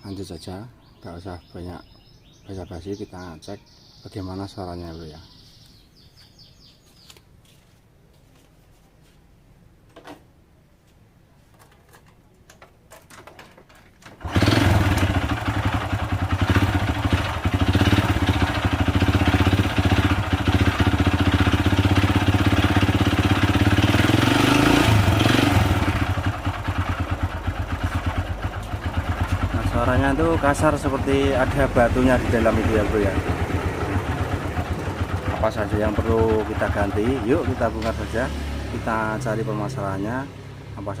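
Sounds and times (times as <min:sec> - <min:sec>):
small motorcycle engine running roughly: 0:14.2 - 0:38.1.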